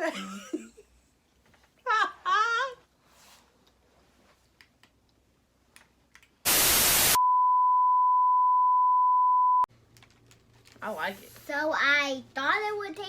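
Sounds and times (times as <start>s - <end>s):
tv-style static burst: 6.5s - 7.2s
steady beep tone: 6.6s - 9.7s.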